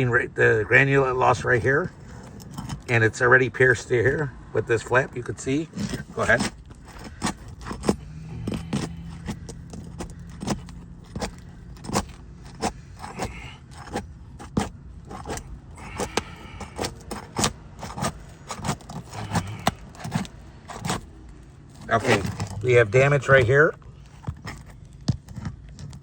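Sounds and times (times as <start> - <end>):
pry tool snapping roof shingles: 5.7 - 21.2.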